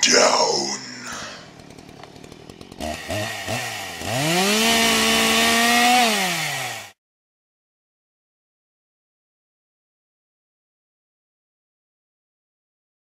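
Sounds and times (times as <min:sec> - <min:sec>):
chainsaw engine revving: 0:00.2 - 0:07.0.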